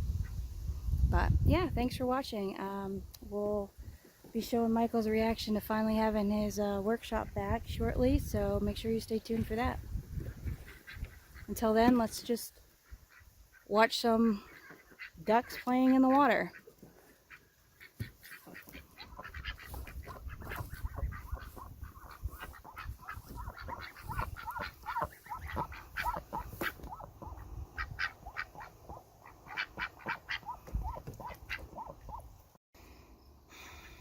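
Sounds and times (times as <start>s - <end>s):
ducks quacking: 10.3s - 32.3s.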